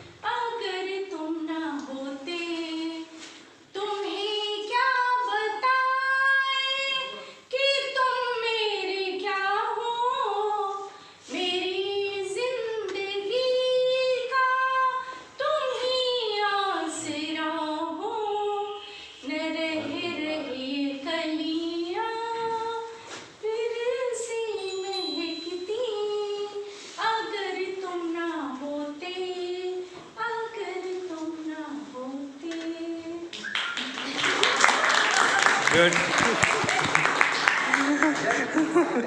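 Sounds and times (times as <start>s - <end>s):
high voice singing unaccompanied: 15.7s - 22.7s.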